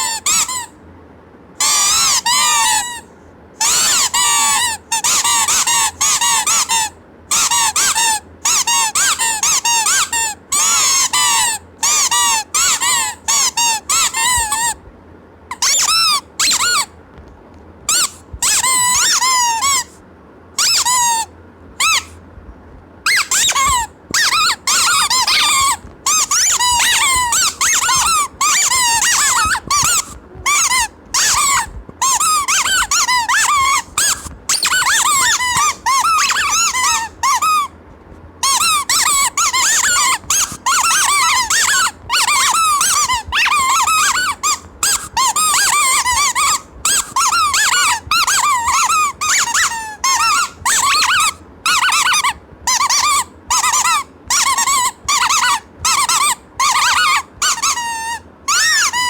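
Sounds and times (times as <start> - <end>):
squeaky toy squeaking: 0.0 - 0.7, 1.6 - 14.8, 15.5 - 17.0, 17.9 - 20.0, 20.6 - 22.2, 23.0 - 37.8, 38.4 - 59.0.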